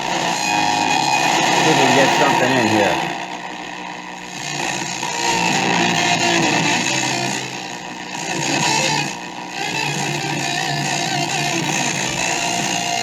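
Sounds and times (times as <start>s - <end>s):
radio static hiss: 0.0s - 13.0s
faint radio broadcast snatches: 1.2s - 4.8s.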